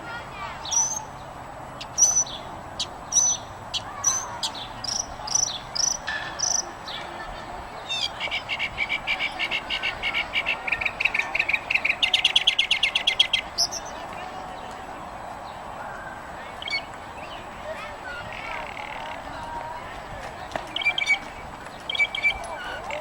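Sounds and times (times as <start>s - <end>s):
birds chirping: 0.1s - 23.0s
bird trilling: 0.6s - 1.1s, 1.8s - 7.0s, 7.8s - 14.0s, 16.6s - 17.4s, 18.1s - 19.2s, 20.7s - 21.2s, 21.8s - 23.0s.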